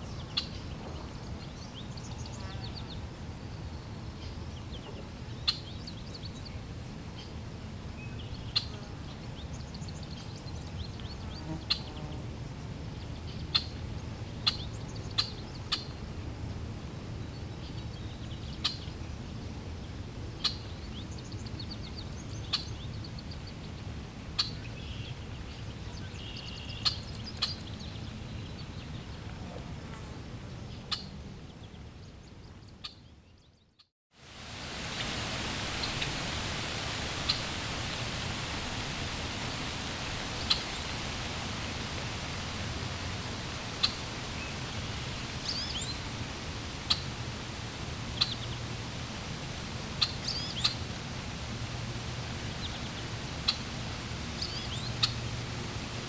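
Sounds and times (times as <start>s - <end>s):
birds calling: 35.0s - 46.1s.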